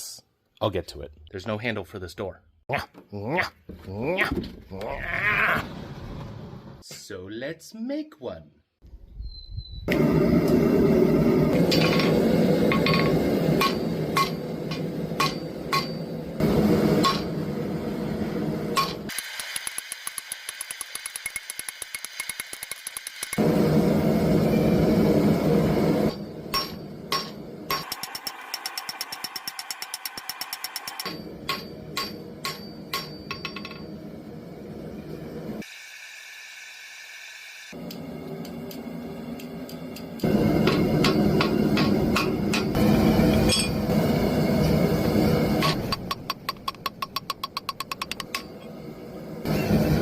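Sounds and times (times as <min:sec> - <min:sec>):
steady low rush: 0:09.9 - 0:18.7, 0:37.8 - 0:45.9
hammer striking steel on anvil: 0:11.6 - 0:16.3, 0:16.9 - 0:17.4, 0:18.7 - 0:19.1, 0:26.1 - 0:34.1, 0:39.4 - 0:43.9, 0:45.6 - 0:48.7.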